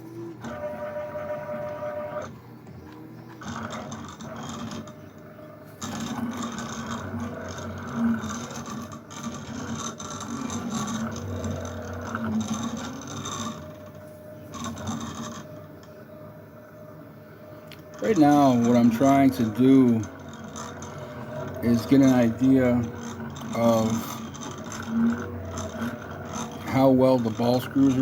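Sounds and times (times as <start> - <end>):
stepper motors whining: 0.0 - 28.0
tool scraping workpiece: 17.9 - 28.0.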